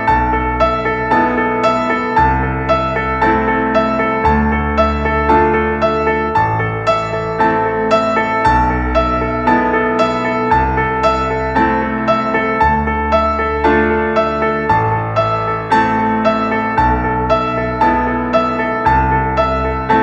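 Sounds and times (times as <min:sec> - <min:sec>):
gentle instrumental music: 0:00.0 - 0:20.0.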